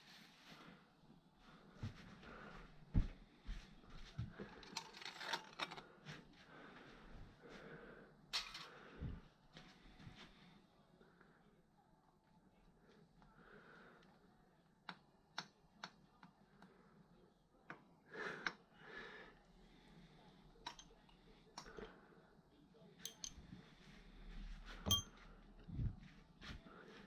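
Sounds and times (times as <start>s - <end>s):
clicks of hand tools and metal parts: 4.6s - 5.8s, 20.6s - 21.8s, 23.0s - 23.4s
ringing metal clink: 23.0s - 23.4s, 24.9s - 25.2s.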